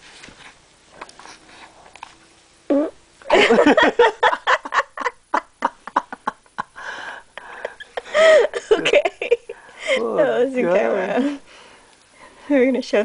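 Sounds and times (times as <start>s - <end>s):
baby farting: 2.7s - 3.0s.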